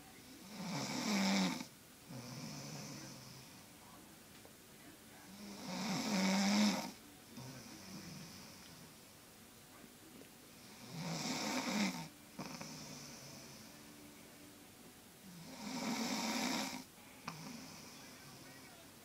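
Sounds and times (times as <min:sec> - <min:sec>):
loud snoring: 0:00.4 - 0:03.5, 0:05.4 - 0:08.6, 0:10.6 - 0:13.7, 0:15.3 - 0:18.0.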